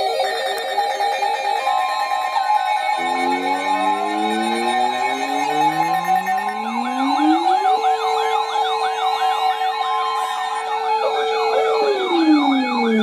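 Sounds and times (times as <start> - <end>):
fast siren wail: 1.4 - 13.0
siren low rising tone: 3.0 - 13.0.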